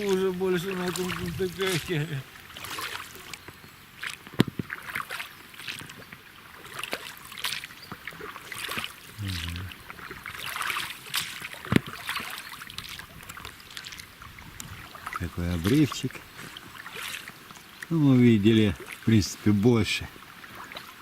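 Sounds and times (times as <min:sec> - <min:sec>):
oars splashing in water: 0:00.0 - 0:21.0
water trickling off oars: 0:00.0 - 0:21.0
low voice-like hum: 0:09.2 - 0:09.8.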